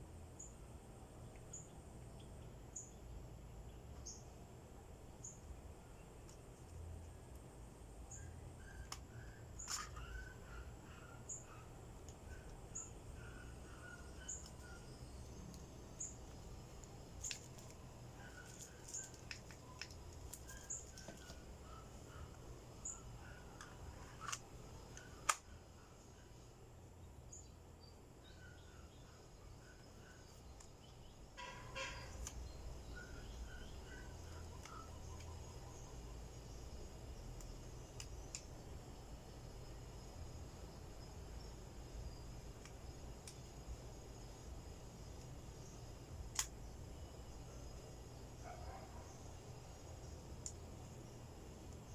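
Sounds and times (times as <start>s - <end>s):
steady low hum: 0.0s - 51.9s
faint bird chirps: 8.0s - 38.4s.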